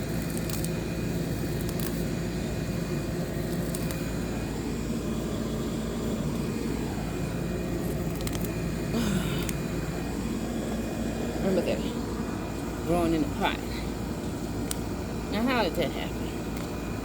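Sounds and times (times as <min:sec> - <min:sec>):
low mechanical drone: 0:00.0 - 0:17.0
grass pulled up snapping: 0:00.2 - 0:00.8, 0:01.5 - 0:02.0, 0:03.5 - 0:04.0, 0:07.8 - 0:08.6.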